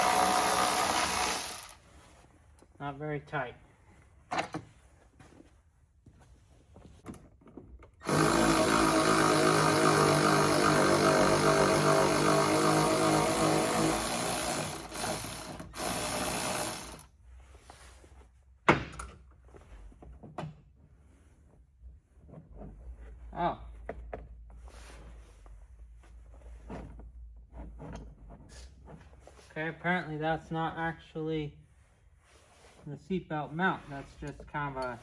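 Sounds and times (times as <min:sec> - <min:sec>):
power driver motor whine: 0:08.0 - 0:17.0.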